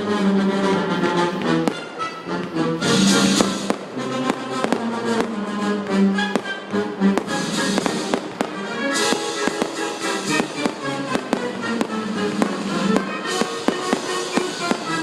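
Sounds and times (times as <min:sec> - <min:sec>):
music with held notes: 0:00.0 - 0:15.0
fireworks bangs and pops: 0:01.0 - 0:15.0
fireworks hissing crackle: 0:02.8 - 0:05.3, 0:06.3 - 0:15.0.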